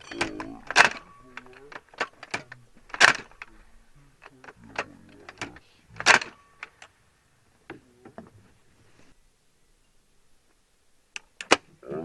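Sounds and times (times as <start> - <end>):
loud sharp clunks: 0.0 - 3.5
metallic clicks and clacks: 0.0 - 3.6
faint voice: 0.2 - 2.8, 3.4 - 6.1, 11.8 - 12.0.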